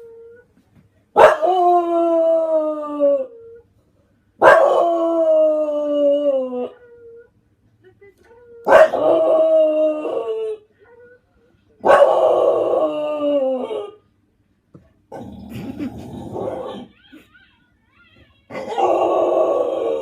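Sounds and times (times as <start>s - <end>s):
dog howling: 11.9s - 14.0s, 18.5s - 20.0s.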